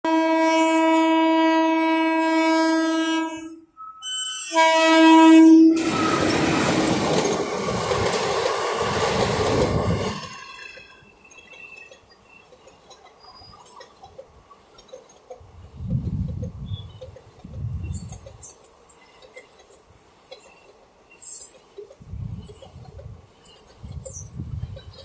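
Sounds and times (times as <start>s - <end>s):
train horn blasts: 0.0s - 6.2s
train passing with wheel clatter: 3.3s - 25.0s.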